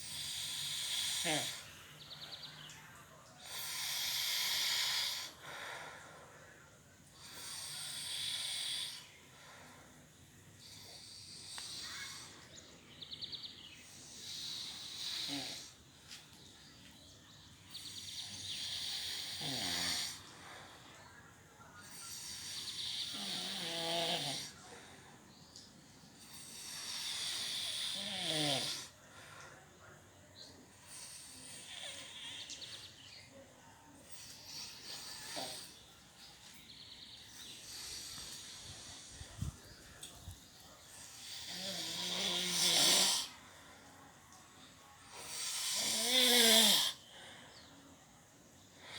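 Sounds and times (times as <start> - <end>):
woman snoring: 0.0 - 1.7, 3.4 - 5.4, 7.2 - 9.1, 14.1 - 15.7, 18.0 - 20.2, 22.0 - 24.6, 26.3 - 28.9, 34.2 - 35.8, 41.2 - 43.4, 45.2 - 47.0.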